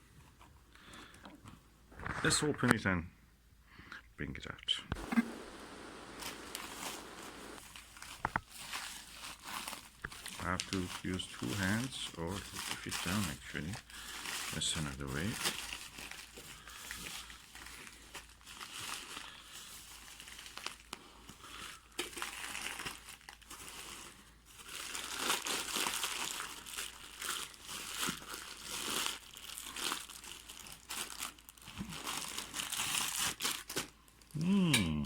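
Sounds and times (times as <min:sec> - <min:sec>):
packaging crinkling and rustling: 0:05.0 - 0:34.4
clicks and knocks of packaging: 0:07.6 - 0:11.8.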